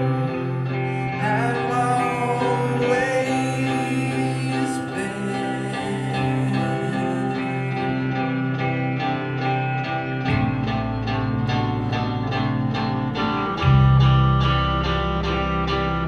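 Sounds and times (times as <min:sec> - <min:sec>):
bass: 0:00.0 - 0:16.0
electric guitars ringing chords: 0:00.0 - 0:16.0
person singing: 0:00.0 - 0:16.0.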